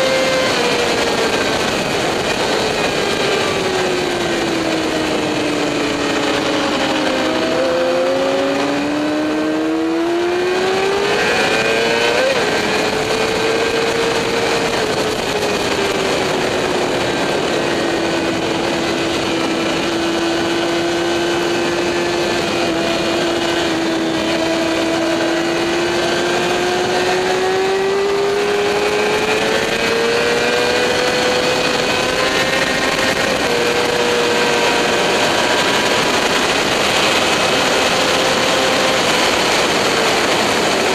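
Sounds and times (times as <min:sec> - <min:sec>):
motorcycle engine racing: 0:00.0 - 0:40.9
steady rushing noise: 0:00.0 - 0:40.9.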